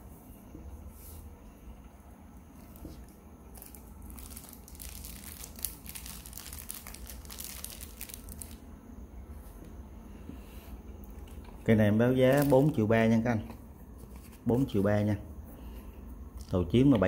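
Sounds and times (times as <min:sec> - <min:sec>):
packaging crinkling: 0:03.5 - 0:08.6, 0:12.2 - 0:12.8.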